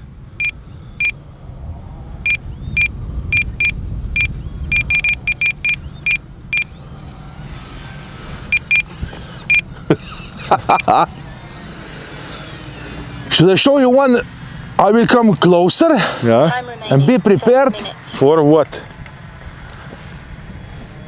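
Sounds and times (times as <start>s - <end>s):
wind rumble on microphone: 0.0s - 10.3s, 18.8s - 21.0s
short high electronic beeps: 2.3s - 6.8s.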